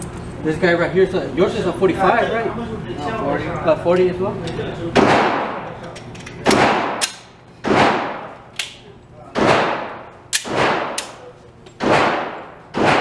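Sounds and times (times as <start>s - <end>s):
echoing handgun shots: 5.0s - 5.6s, 6.4s - 8.4s, 9.4s - 11.2s, 11.8s - 13.0s
sharp cracks: 9.4s - 11.2s, 11.8s - 13.0s.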